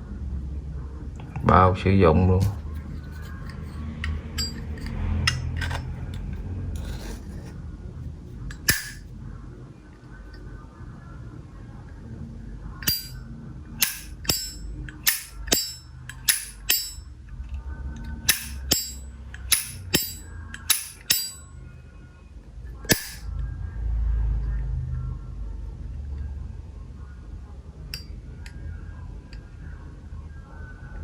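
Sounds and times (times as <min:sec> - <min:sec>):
lighter lid clinking open and shut: 0:08.5 - 0:09.0, 0:13.8 - 0:17.0, 0:18.3 - 0:21.4, 0:22.9 - 0:23.2.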